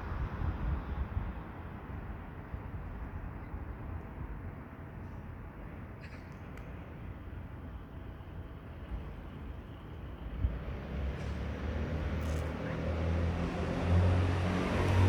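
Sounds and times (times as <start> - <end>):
approaching engine rumble: 9.0 - 15.0.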